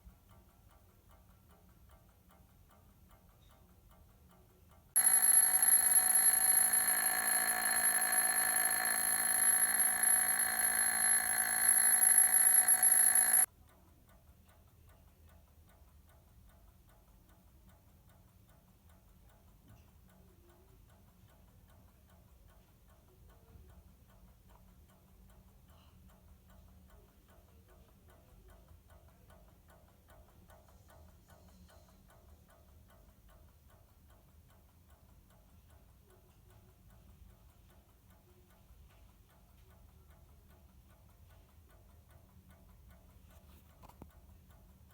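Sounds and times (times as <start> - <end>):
alarm clock ringing: 5.0 - 13.5
alarm clock ticking: 5.0 - 13.5.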